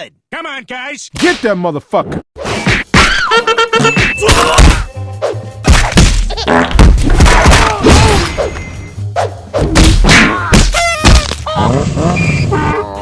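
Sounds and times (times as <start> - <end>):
cartoon thuds and whacks: 2.4 - 3.2, 3.9 - 4.9, 5.6 - 8.4, 9.6 - 11.5
music: 3.1 - 13.0.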